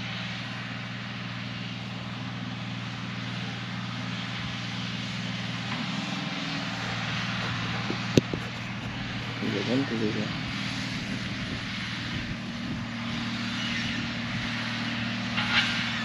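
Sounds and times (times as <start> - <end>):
tractor diesel engine running: 0.0 - 16.0.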